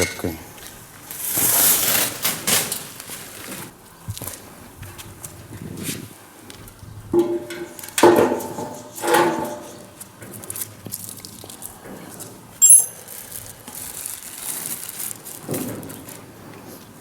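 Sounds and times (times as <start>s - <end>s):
high metallic chink: 12.6s - 13.1s
metal parts clanking: 12.6s - 13.2s.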